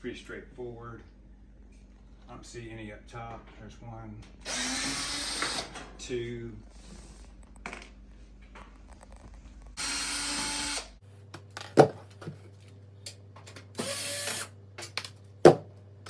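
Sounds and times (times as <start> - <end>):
cordless drill whirring: 4.4 - 5.7, 9.8 - 11.0, 13.8 - 14.5.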